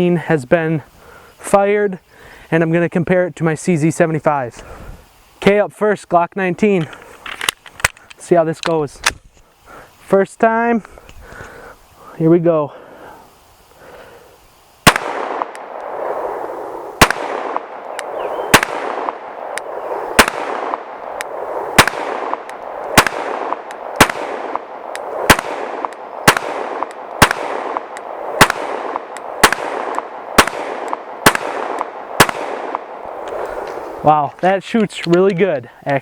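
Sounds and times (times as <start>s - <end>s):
pistol shots: 14.8s - 16.4s, 17.0s - 33.0s
gunshot echo: 14.8s - 33.1s.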